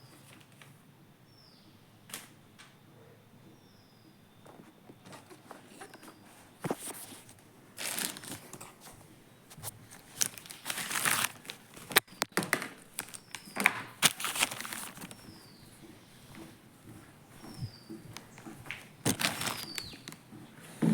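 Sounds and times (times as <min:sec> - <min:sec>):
plastic packaging crinkling and tearing: 0:07.8 - 0:08.8, 0:09.5 - 0:15.2, 0:19.0 - 0:20.2.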